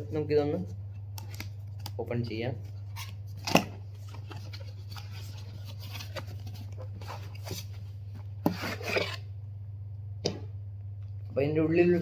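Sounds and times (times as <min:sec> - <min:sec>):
low electrical hum: 0:00.0 - 0:12.0
packaging scraping and rustling: 0:04.0 - 0:07.8, 0:08.4 - 0:09.2.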